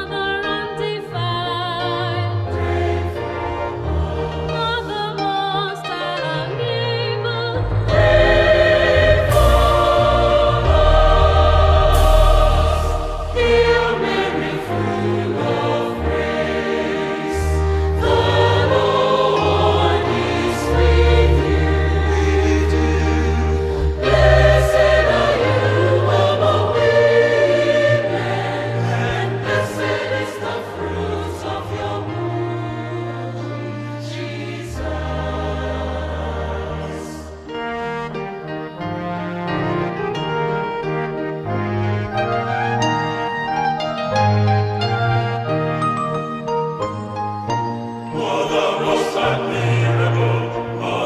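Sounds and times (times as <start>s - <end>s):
choir singing sacred music: 1.2s - 38.2s, 47.5s - 51.0s
sustained low bass notes: 7.7s - 15.0s.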